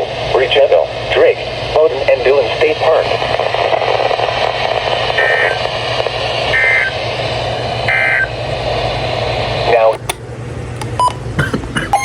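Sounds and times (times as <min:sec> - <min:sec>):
radio static: 0:00.0 - 0:08.4, 0:09.6 - 0:10.1, 0:11.4 - 0:12.0
low hum: 0:00.0 - 0:12.0
warbling data tone bursts: 0:02.8 - 0:07.0, 0:07.9 - 0:08.4.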